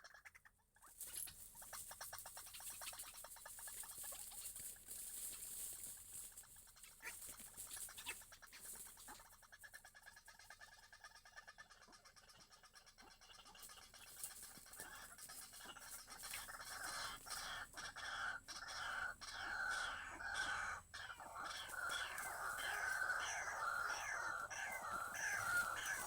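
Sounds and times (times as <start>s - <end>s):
birds calling with falling notes: 18.8s - 26.0s.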